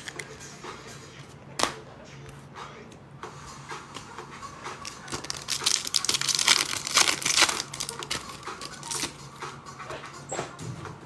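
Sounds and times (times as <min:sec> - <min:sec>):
foil wrapper crinkling and tearing: 0:04.8 - 0:09.2.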